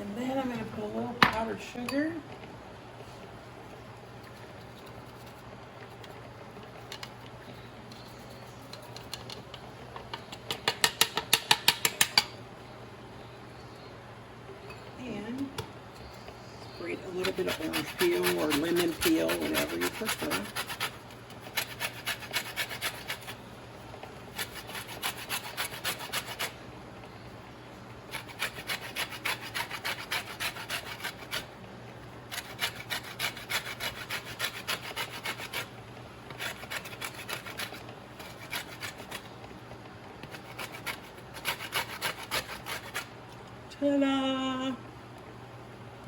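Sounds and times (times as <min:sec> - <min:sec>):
peel rasping on a grater: 0:16.9 - 0:23.4, 0:24.3 - 0:26.6, 0:28.1 - 0:31.6, 0:32.3 - 0:35.7, 0:36.3 - 0:39.3, 0:40.2 - 0:43.1.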